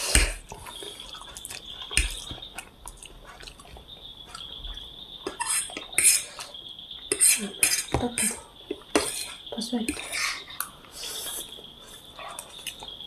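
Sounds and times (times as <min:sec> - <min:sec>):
cutlery scraping a plate: 0:05.3 - 0:06.4.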